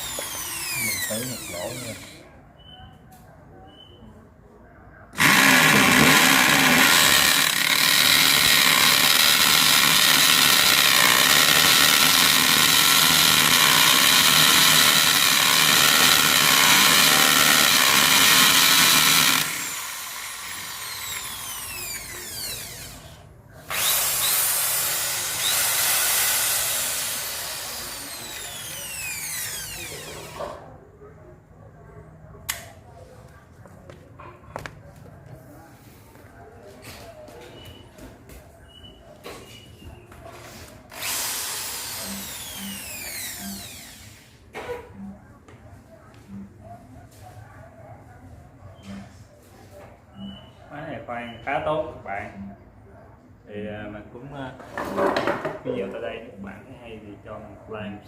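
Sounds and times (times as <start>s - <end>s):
drill motor whine spinning down: 0.0s - 2.2s, 13.5s - 30.4s
hammer drill boring a hole: 0.0s - 2.2s, 5.2s - 30.6s, 40.9s - 44.1s.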